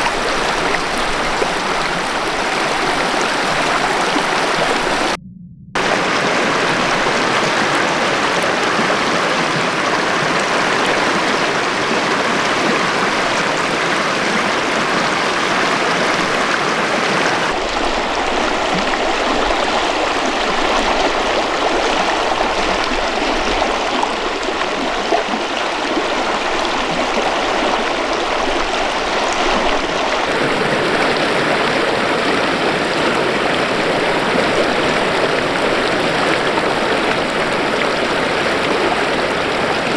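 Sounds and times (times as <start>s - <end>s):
river water rushing over rocks: 0.0s - 5.2s, 5.8s - 39.9s.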